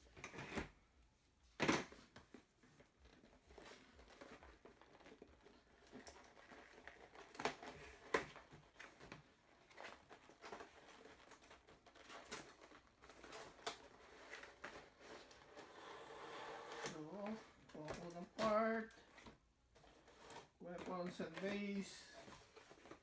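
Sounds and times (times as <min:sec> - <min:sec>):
plastic packaging crinkling: 0:03.0 - 0:15.6.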